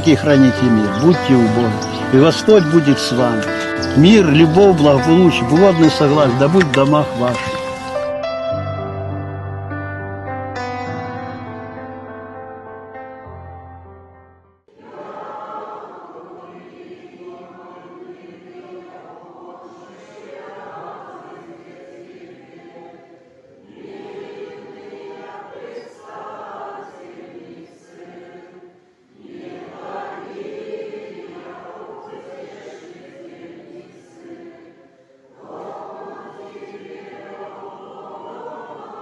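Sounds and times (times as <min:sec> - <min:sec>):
choir singing a chant: 0:00.0 - 0:08.0, 0:14.7 - 0:39.0
held chord of background music: 0:00.0 - 0:39.0.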